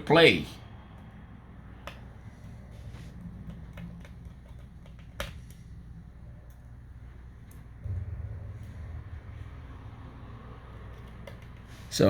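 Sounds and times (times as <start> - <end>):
low steady hum: 0.0 - 12.0
laptop clicks and taps: 1.8 - 2.6, 3.4 - 5.6, 10.9 - 11.7.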